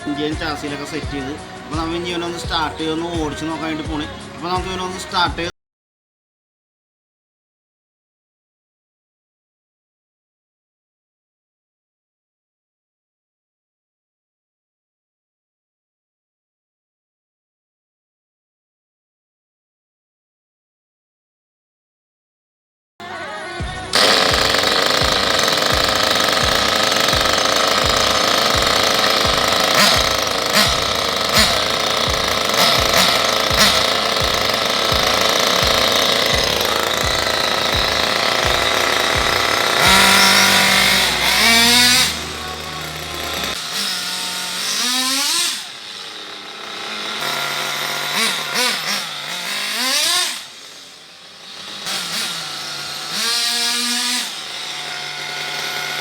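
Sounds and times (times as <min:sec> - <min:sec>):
music with thumping beat: 0:00.4 - 0:05.5, 0:23.6 - 0:43.6
model car engine buzzing: 0:23.9 - 0:56.0.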